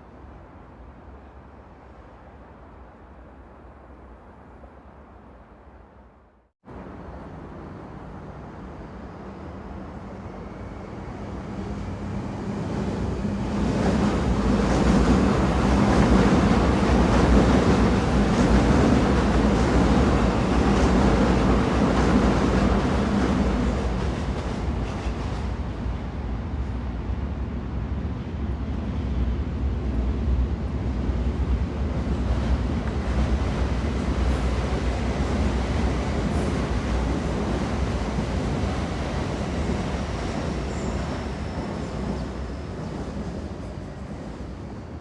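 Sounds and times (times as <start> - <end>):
train wheels rumbling on track: 6.7 - 45.0.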